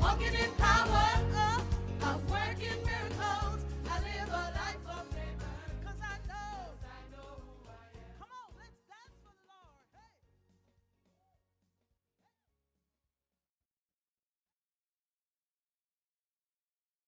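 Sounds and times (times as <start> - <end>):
instrumental accompaniment: 0.0 - 7.8
choir singing: 0.0 - 8.2.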